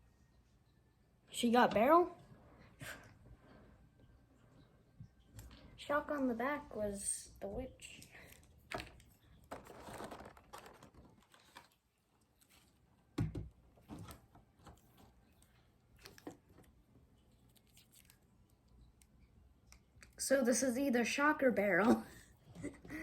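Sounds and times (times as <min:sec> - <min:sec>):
packaging rustling: 0:08.7 - 0:12.8.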